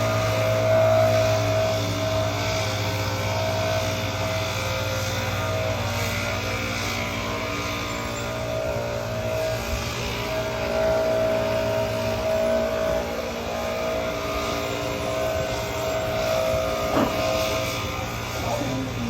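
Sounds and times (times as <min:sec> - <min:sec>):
bus engine drone: 0:00.0 - 0:19.0
held whining tone: 0:00.0 - 0:19.0.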